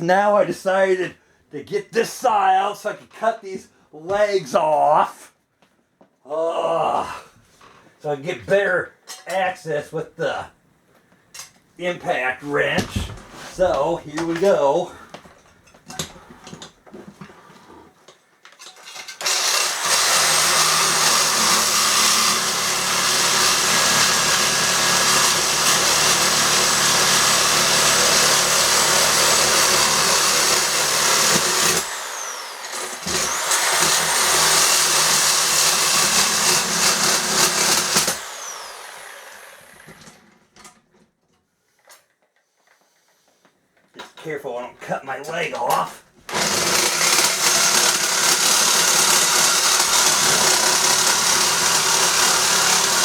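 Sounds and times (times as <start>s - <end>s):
power saw cutting: 19.1s - 40.2s, 46.3s - 53.0s.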